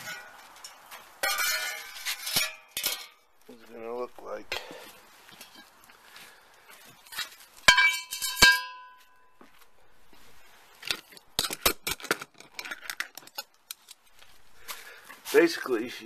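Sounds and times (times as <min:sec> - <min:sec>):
metal clanks: 0:00.0 - 0:03.3, 0:07.1 - 0:09.4.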